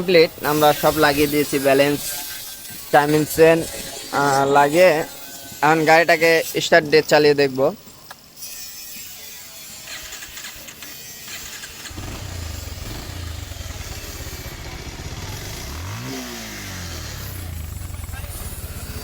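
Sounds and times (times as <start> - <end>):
motorcycle engine starting and idling: 9.9 - 19.0
motorcycle engine revving: 11.3 - 19.0.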